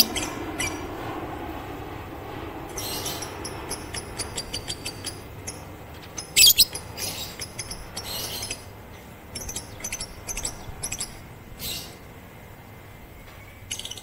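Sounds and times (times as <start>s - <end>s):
bird chirping: 0.0s - 0.9s, 2.7s - 12.1s, 13.1s - 14.0s.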